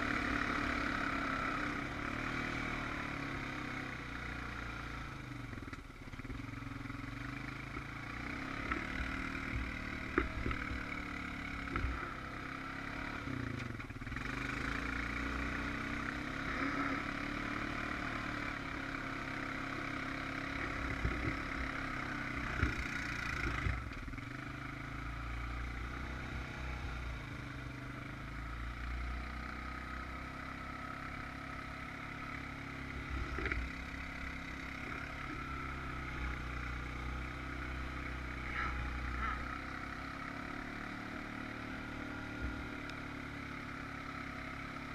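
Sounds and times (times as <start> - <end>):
atv engine revving: 0.0 - 44.9.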